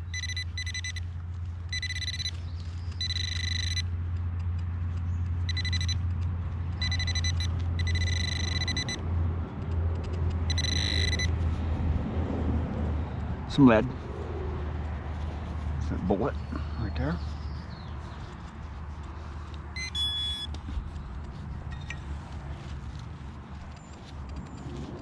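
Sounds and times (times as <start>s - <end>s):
metal detector beeps: 0.0s - 1.0s, 1.7s - 3.9s, 5.4s - 6.0s, 6.8s - 9.0s, 10.4s - 11.4s, 19.8s - 20.6s.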